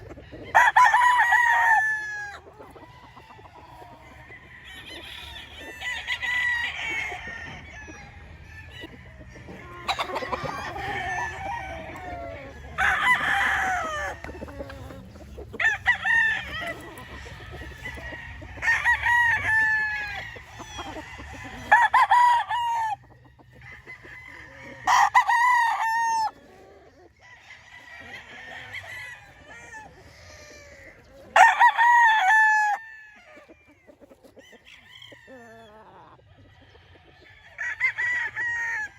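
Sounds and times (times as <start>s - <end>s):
roosters crowing: 0.0s - 38.9s.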